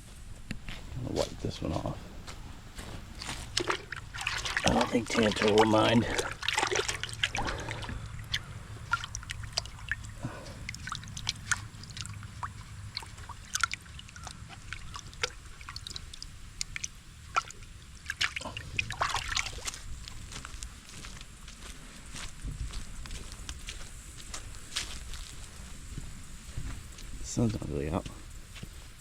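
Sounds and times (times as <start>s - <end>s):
water sloshing and dripping: 3.1s - 20.5s.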